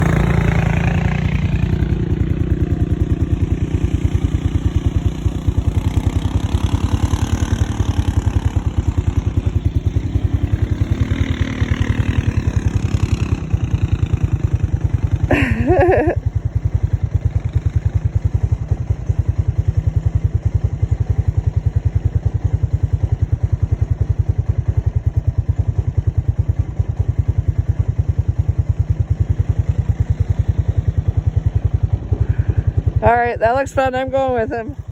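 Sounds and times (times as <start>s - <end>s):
distant engines revving: 0.0s - 16.2s, 29.2s - 34.9s
off-road engine idling: 0.0s - 34.9s.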